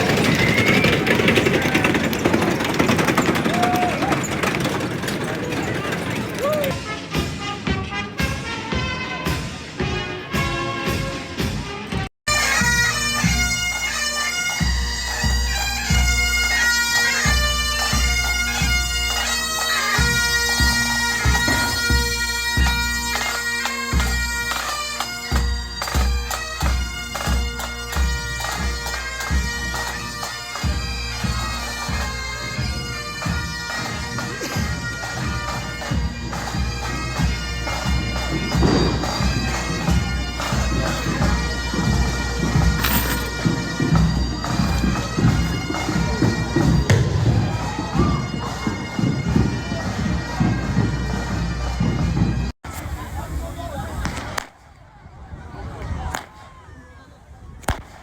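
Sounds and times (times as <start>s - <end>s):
drum beats: 0.0s - 13.8s, 34.3s - 52.4s
bagpipes playing a march: 6.7s - 52.5s.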